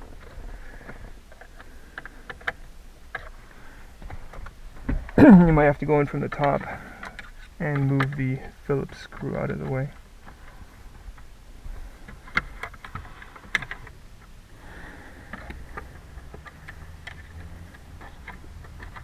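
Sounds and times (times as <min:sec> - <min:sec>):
sharp plastic clacks: 0:15.3 - 0:19.0.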